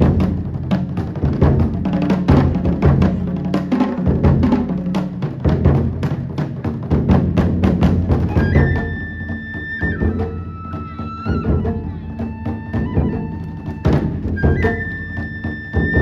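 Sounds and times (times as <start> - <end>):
drums beating rapidly: 0.0 - 16.0
high flute melody: 8.2 - 16.0.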